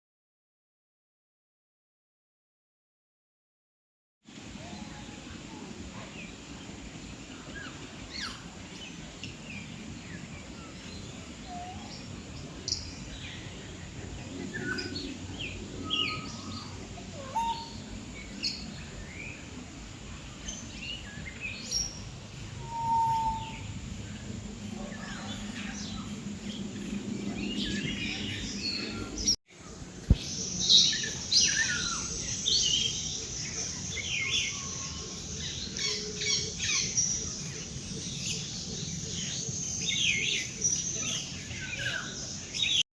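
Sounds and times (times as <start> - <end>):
low background noise: 4.3 - 42.8
birds chirping and whistling: 14.4 - 19.4, 20.4 - 29.4, 30.1 - 42.8.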